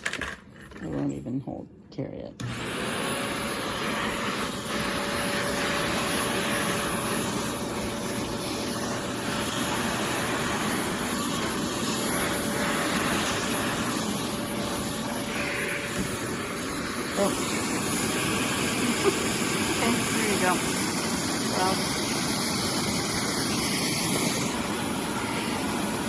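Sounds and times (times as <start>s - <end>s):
vacuum cleaner running: 2.4s - 26.0s.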